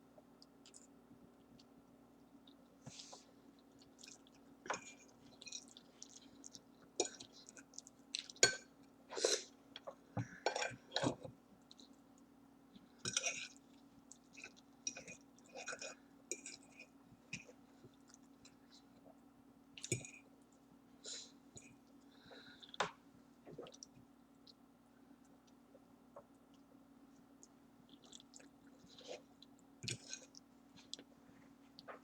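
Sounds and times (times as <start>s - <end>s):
wet chewing and mouth smacks: 3.6s - 8.4s, 23.5s - 24.6s, 27.3s - 31.1s.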